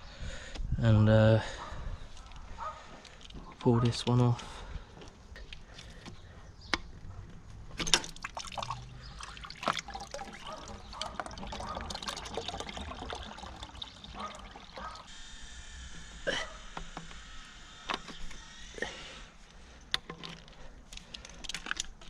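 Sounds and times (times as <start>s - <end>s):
liquid trickling: 7.9s - 15.1s.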